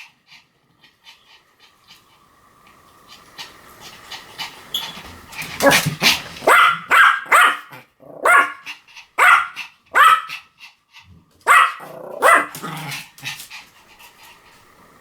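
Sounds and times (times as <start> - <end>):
small dog barking: 6.4 - 8.6, 9.2 - 10.4, 11.4 - 12.9.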